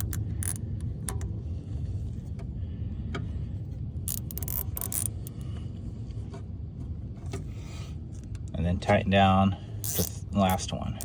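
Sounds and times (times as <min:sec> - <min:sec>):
zip tie ratcheting rasps: 0:00.0 - 0:00.6, 0:04.1 - 0:05.4, 0:09.8 - 0:10.6
steady low rumble: 0:00.0 - 0:11.0.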